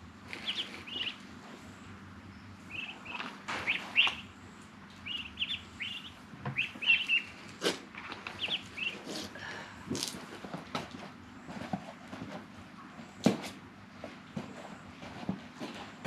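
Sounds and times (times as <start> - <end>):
birds chirping: 0.3 - 9.2.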